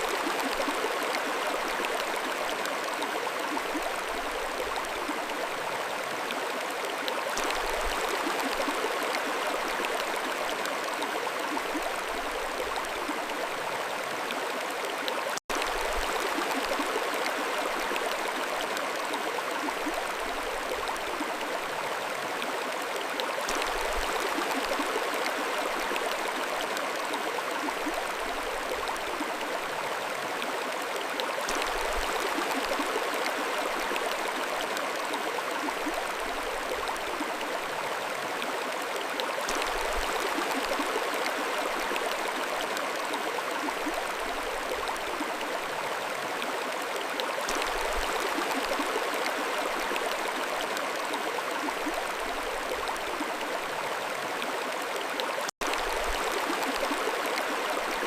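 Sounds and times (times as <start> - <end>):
stream rushing over stones: 0.0 - 58.0.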